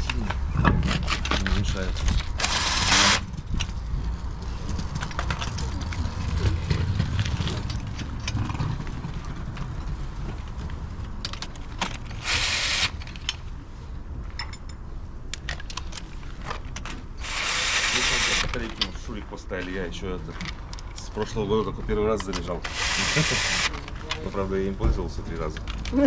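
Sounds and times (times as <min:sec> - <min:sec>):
steady low rumble: 0:02.5 - 0:10.5.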